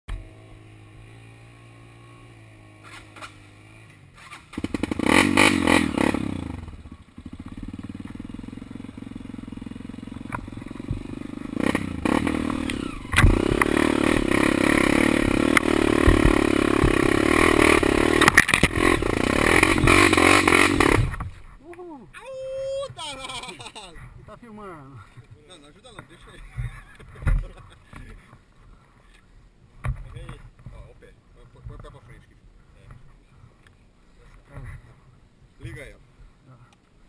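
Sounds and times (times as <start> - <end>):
engine running: 0.1 - 21.3.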